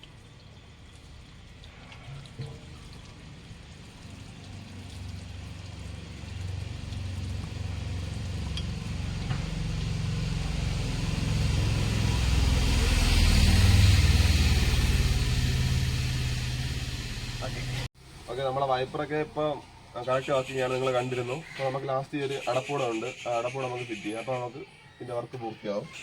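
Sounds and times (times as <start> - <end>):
vehicle engine rumble: 0.0 - 20.4.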